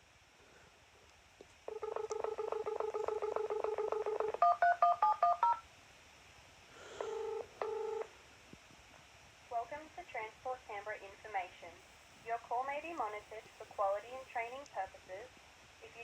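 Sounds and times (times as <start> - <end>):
double-ring ringback tone: 1.7 - 5.6, 7.0 - 8.1
touch-tone dialing beeps: 1.7 - 5.6, 7.0 - 8.1
warbling dial tone: 1.7 - 5.6, 7.0 - 8.1.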